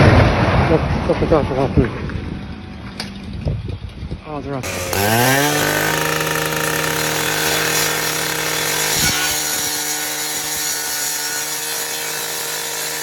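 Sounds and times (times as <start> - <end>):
machine humming and rasping: 4.6 - 13.0.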